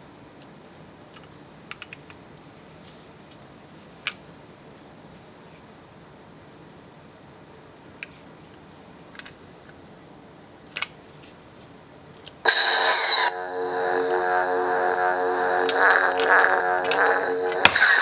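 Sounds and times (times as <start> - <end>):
lightsaber humming and swinging: 12.5 - 18.0.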